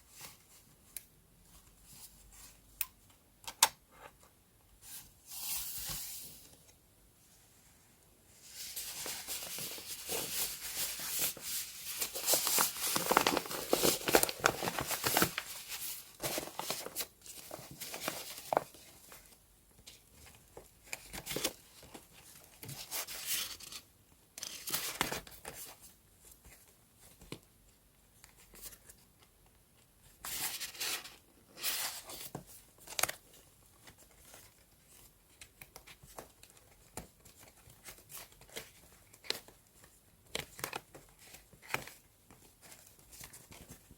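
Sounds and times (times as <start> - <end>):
paper crinkling and tearing: 8.6 - 18.7.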